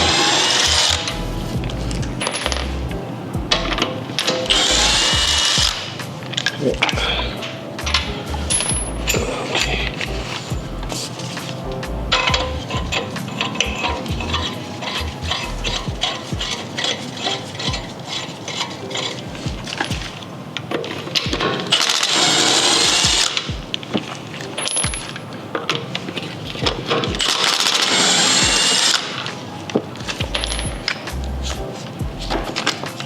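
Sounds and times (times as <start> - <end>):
power tool running: 0.0 - 1.1, 4.5 - 5.8.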